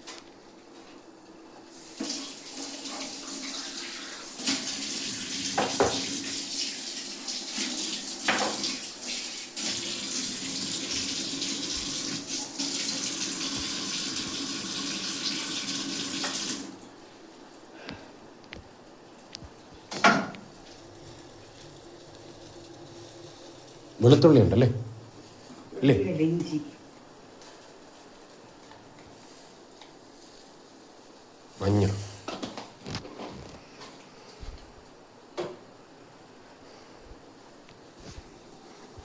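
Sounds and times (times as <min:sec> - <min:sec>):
tap running into sink: 0:01.9 - 0:03.1, 0:04.4 - 0:06.3, 0:07.5 - 0:09.0, 0:09.6 - 0:16.8, 0:19.9 - 0:23.7.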